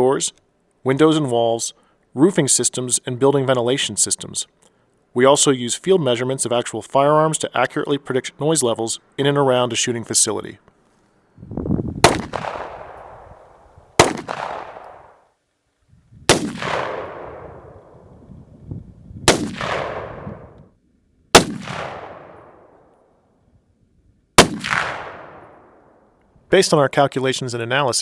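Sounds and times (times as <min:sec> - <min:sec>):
gunshots with echo: 0:12.0 - 0:15.2, 0:16.3 - 0:18.2, 0:19.3 - 0:20.6, 0:21.4 - 0:22.8, 0:24.4 - 0:25.9.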